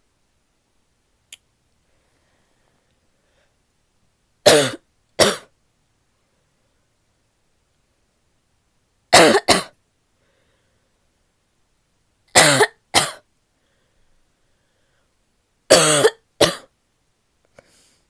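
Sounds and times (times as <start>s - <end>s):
woman coughing: 4.5s - 5.5s, 9.2s - 9.7s, 12.4s - 13.2s, 15.7s - 16.7s.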